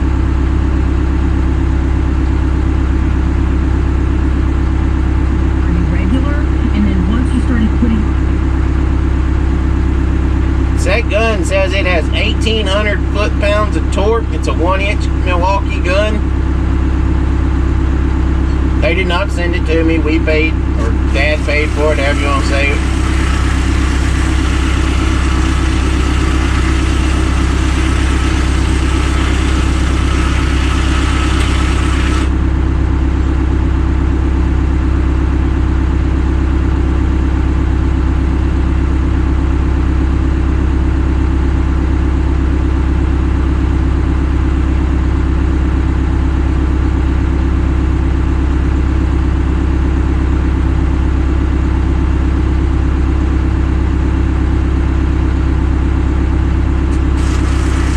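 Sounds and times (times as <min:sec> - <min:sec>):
engine idling: 0:00.0 - 0:57.9.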